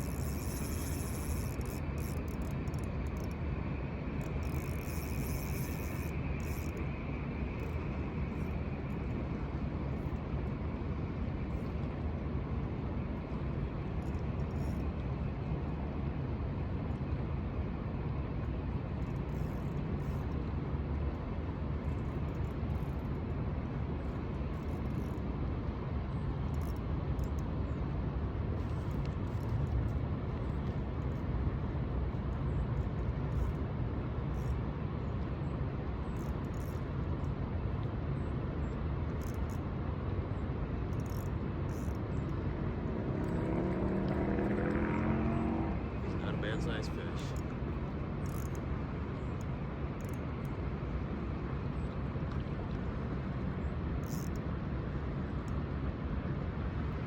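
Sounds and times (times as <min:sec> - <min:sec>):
low outdoor rumble: 0:00.0 - 0:57.0
vehicle engine hum approaching: 0:41.8 - 0:53.4.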